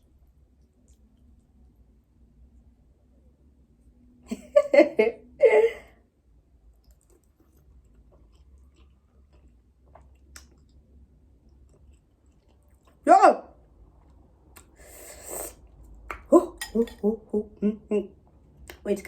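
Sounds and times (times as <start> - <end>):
quiet chewing: 0.0 - 1.8, 6.7 - 13.0, 13.6 - 17.0.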